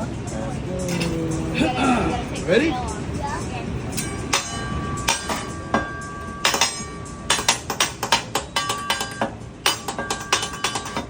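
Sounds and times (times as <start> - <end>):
metal utensils clanking on griddle: 0.8 - 1.2, 4.0 - 11.0.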